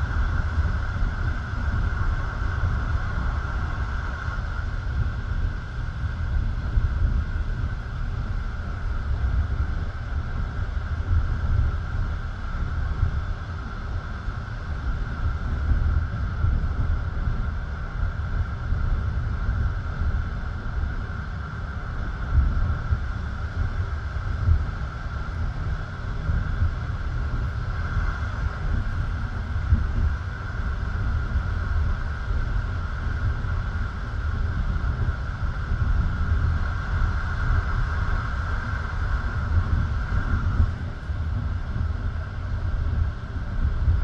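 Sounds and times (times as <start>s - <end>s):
constant higher hum: 0.0s - 44.0s
wind noise: 0.0s - 44.0s.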